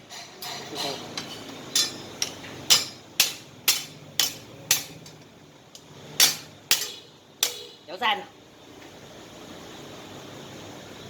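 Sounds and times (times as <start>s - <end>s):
hammer striking sheet metal: 1.8s - 5.0s, 6.2s - 7.8s.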